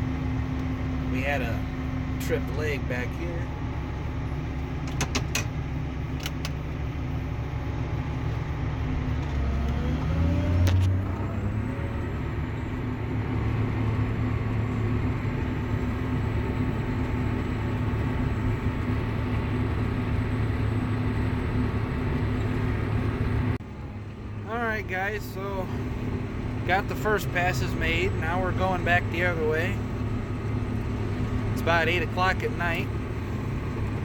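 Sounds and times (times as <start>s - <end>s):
tractor engine running under load: 0.0s - 34.0s.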